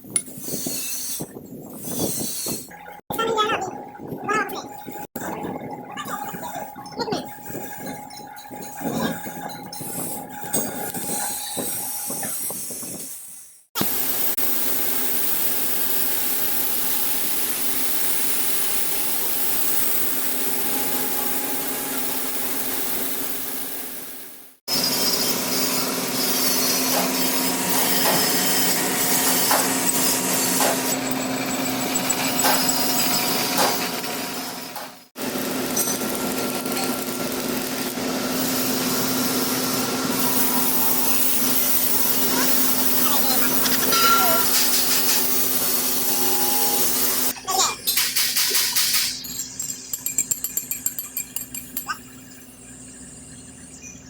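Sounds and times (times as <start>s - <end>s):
workshop machine humming: 13.8s - 54.0s.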